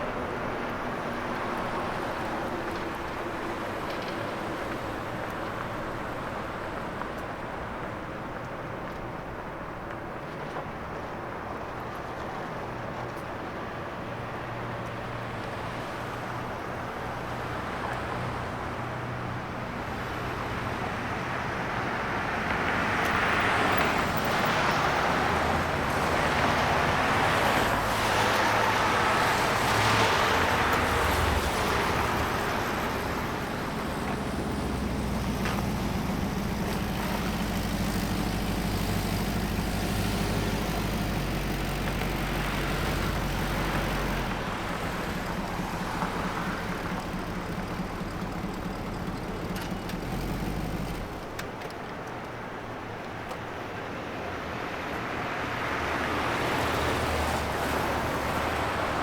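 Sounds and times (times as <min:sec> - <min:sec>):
cars passing by: 0:00.0 - 0:59.0
low engine hum: 0:22.5 - 0:52.1.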